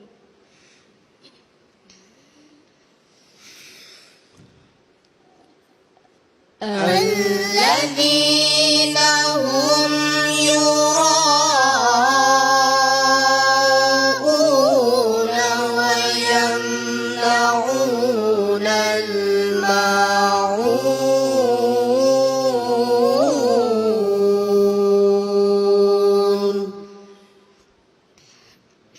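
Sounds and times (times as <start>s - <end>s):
person chanting melodically: 6.6s - 27.4s.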